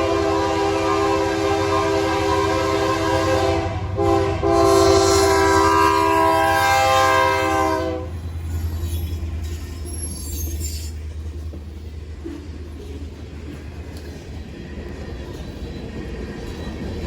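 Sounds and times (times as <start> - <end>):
locomotive air horn blasts: 0.0 - 8.2
train rumbling past: 0.0 - 17.0.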